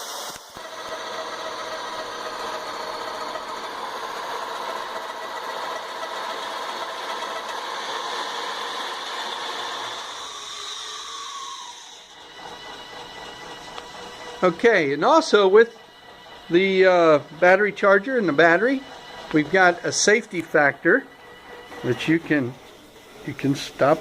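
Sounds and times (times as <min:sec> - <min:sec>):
electric drill spinning lathe: 0:00.0 - 0:24.0
rattle: 0:00.3 - 0:24.0.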